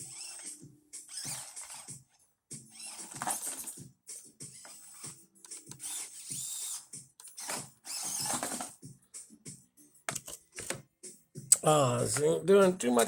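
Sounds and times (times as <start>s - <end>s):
small electric motor whining: 0.0s - 2.0s, 2.6s - 3.8s, 4.5s - 8.7s.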